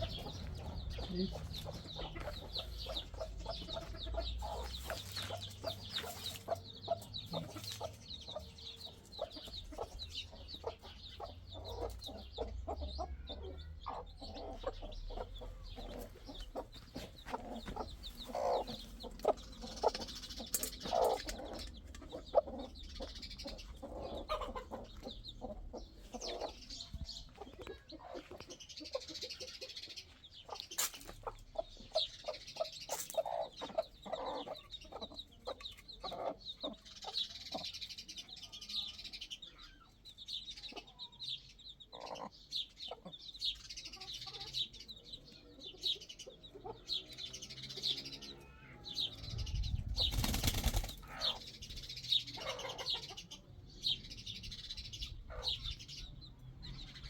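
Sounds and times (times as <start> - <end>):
chickens clucking: 0.0 - 57.0.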